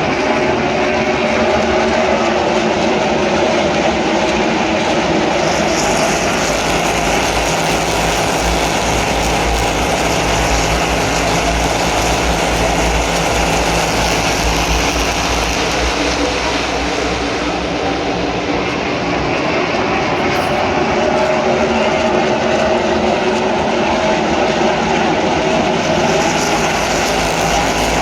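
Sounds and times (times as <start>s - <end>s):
race car engines roaring: 0.0s - 28.0s.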